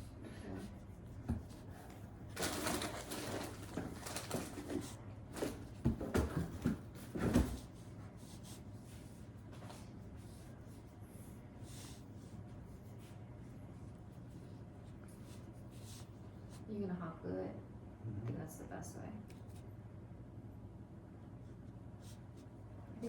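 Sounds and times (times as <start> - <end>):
rustling craft materials: 1.1 - 8.3.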